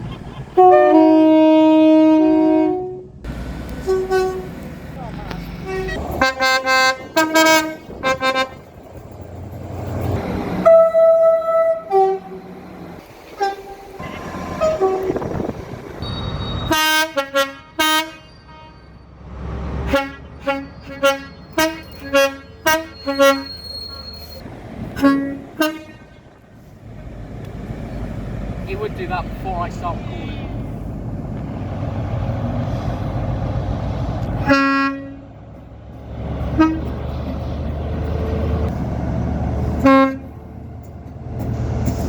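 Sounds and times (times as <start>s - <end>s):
train horn toots: 0.6s - 3.2s, 3.8s - 4.6s, 5.6s - 8.7s, 10.5s - 12.6s, 13.4s - 19.0s, 19.8s - 24.3s, 24.9s - 26.2s, 34.3s - 35.4s, 36.5s - 37.0s, 39.8s - 40.4s.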